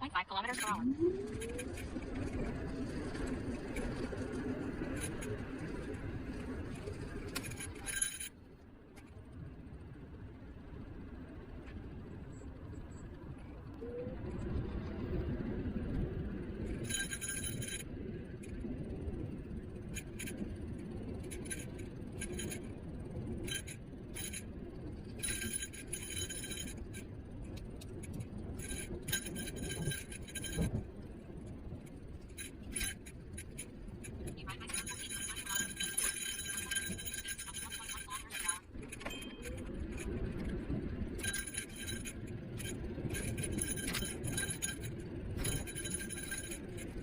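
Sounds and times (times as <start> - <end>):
scooter road rumble: 0.0 - 47.0
wind: 0.0 - 47.0
metallic jingling rattle: 6.9 - 8.4, 16.7 - 17.8, 21.2 - 31.0, 31.8 - 47.0.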